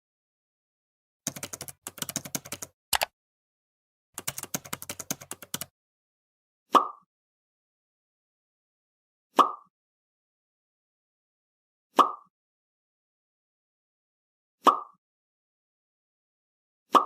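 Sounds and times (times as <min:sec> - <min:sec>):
keyboard key clicks: 0:01.3 - 0:03.1.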